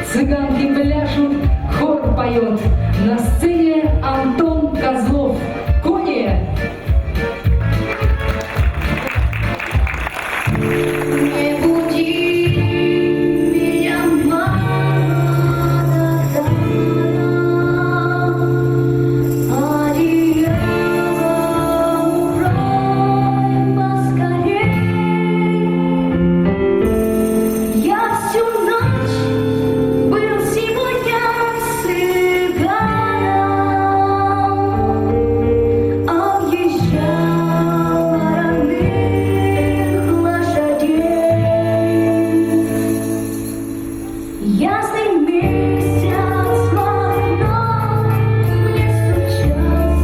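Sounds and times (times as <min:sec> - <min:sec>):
live band accompaniment: 0:00.0 - 0:50.0
person singing: 0:10.6 - 0:26.1, 0:36.0 - 0:43.5, 0:44.4 - 0:50.0.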